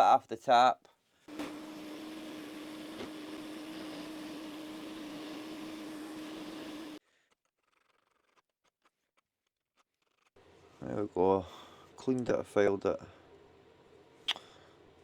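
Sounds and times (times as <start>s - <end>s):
workshop machine motor humming: 1.3s - 7.0s.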